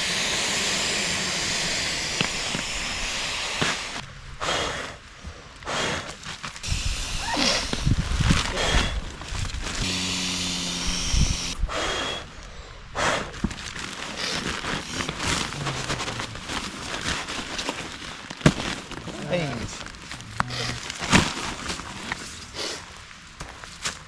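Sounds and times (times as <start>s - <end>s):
camping gear rustling and clattering: 3.6s - 10.1s, 13.0s - 24.0s.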